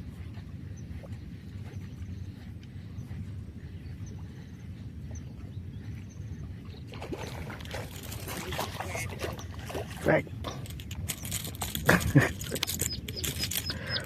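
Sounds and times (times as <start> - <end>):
boat engine low rumble: 0.0 - 14.0
water splashing against hull: 6.4 - 14.0.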